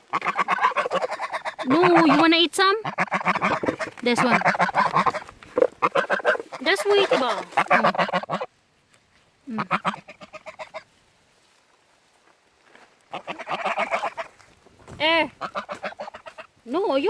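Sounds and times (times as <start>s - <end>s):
geese honking: 0.0s - 8.6s, 9.5s - 11.0s, 13.1s - 14.4s, 15.2s - 16.9s.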